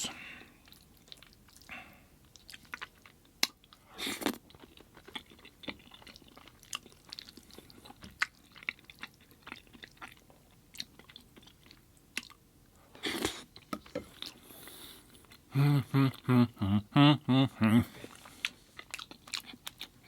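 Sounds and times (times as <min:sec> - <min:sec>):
chewing and biting: 0:02.3 - 0:12.4, 0:18.1 - 0:20.0.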